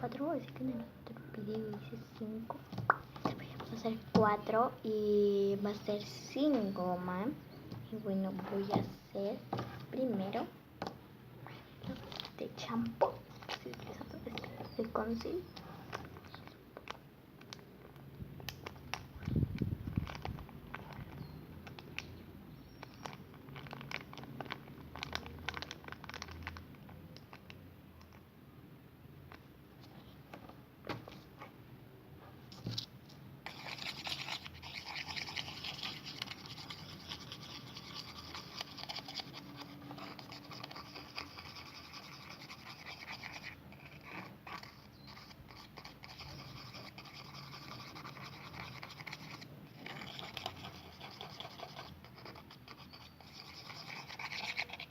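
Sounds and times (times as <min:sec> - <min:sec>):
utensil scraping thick mixture: 0:33.4 - 0:54.9.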